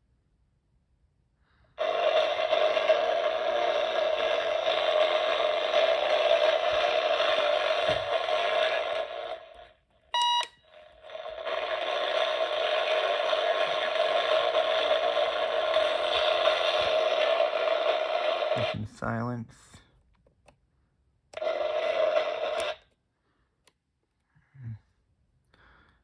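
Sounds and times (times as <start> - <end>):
clock radio alarm: 1.8 - 9.5, 10.2 - 10.6
short beep: 10.1 - 10.7.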